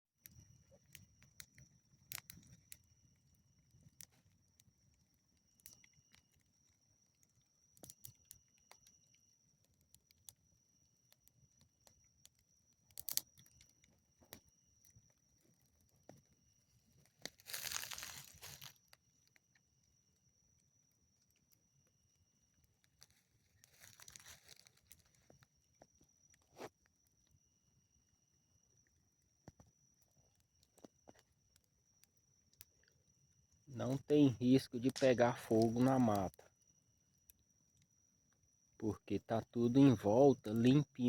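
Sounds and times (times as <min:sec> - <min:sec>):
campfire crackling and popping: 0:00.2 - 0:19.9, 0:22.5 - 0:27.0, 0:29.3 - 0:33.1, 0:33.7 - 0:36.5, 0:38.8 - 0:41.0
faint high-pitched tone: 0:33.7 - 0:36.4.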